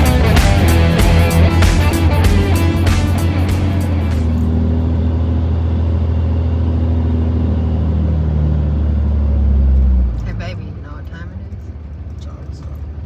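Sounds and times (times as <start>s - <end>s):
music: 0.0s - 4.6s
vehicle engine and road drone: 0.0s - 13.0s.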